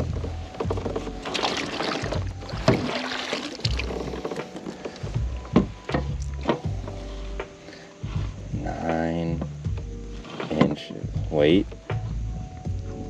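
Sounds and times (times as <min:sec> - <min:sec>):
knocks against kayak: 0:00.1 - 0:07.0
water splashing: 0:00.6 - 0:05.1.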